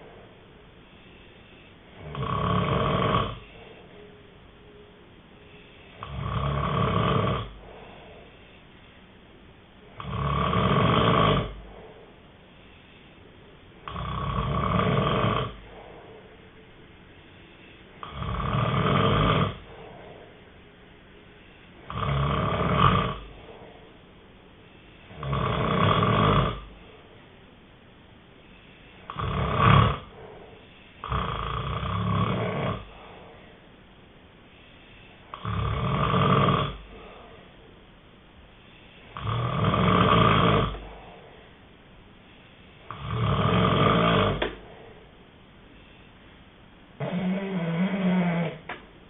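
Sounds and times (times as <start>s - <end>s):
person snoring: 1.1s - 3.8s, 5.8s - 8.3s, 10.0s - 12.2s, 13.8s - 16.4s, 17.6s - 20.4s, 21.8s - 24.0s, 25.0s - 26.8s, 29.0s - 33.6s, 35.3s - 37.5s, 39.0s - 41.2s, 42.9s - 44.7s, 47.0s - 48.8s.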